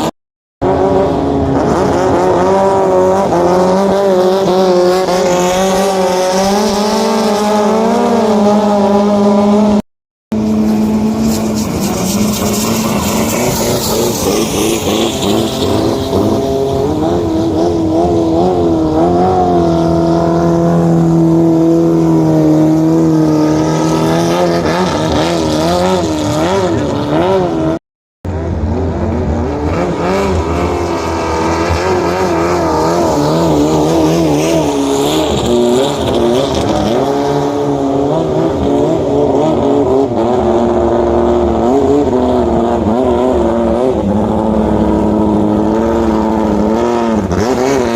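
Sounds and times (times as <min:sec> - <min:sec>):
boat engine running hard: 0:16.0 - 0:27.4, 0:28.4 - 0:47.9.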